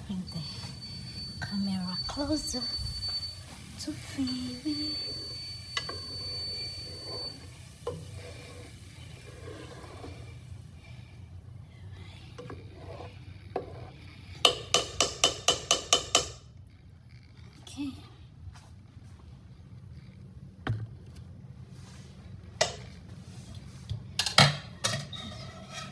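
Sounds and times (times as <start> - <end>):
spoon stirring in pot: 0.0 - 11.2, 11.8 - 16.4, 21.9 - 25.9.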